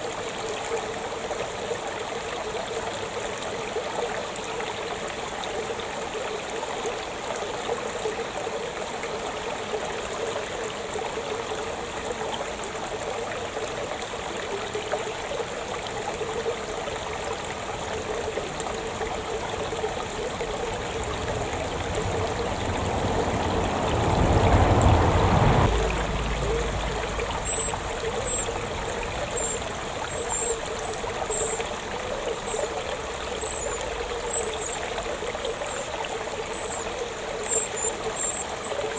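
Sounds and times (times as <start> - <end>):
stream trickling: 0.0 - 38.9
low rumble: 19.0 - 31.4.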